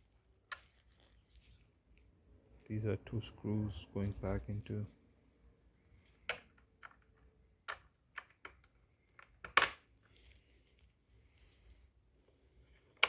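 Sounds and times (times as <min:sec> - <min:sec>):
small clicks and knocks: 0:06.1 - 0:10.1.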